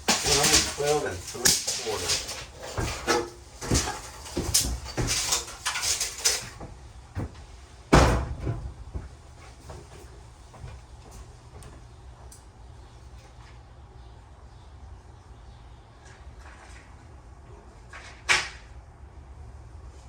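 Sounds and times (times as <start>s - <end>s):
small knocks and clatter: 0.0s - 12.4s.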